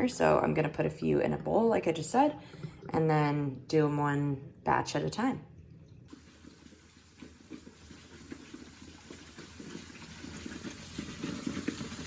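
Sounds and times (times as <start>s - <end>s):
water sloshing in a bowl: 5.4s - 12.0s.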